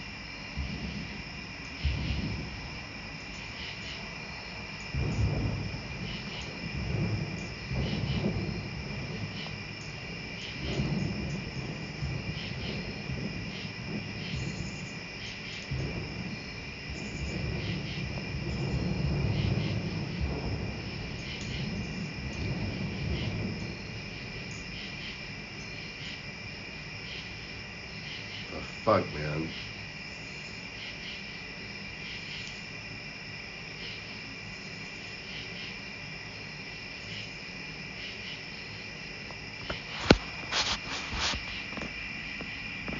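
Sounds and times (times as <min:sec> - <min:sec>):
insect chorus trilling: 0:00.0 - 0:42.9
short scuffing bursts: 0:39.6 - 0:42.0.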